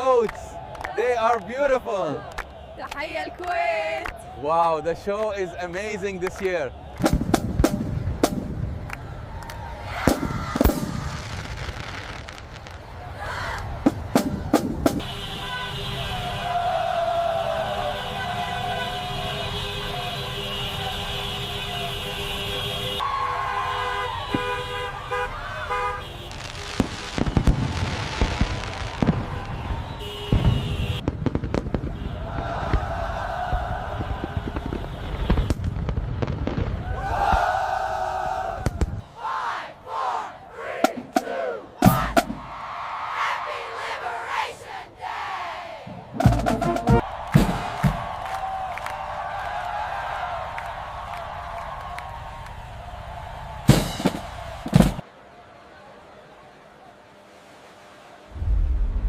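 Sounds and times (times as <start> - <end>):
fireworks bangs: 6.8 - 8.9, 9.9 - 16.3, 26.0 - 37.5, 46.2 - 48.4, 53.5 - 55.0.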